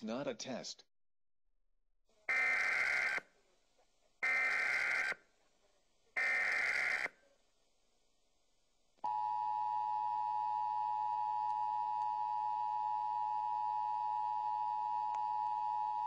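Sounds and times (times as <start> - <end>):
two-tone alert alarm: 2.3 - 3.2, 4.2 - 5.2, 6.2 - 7.1, 9.1 - 16.0.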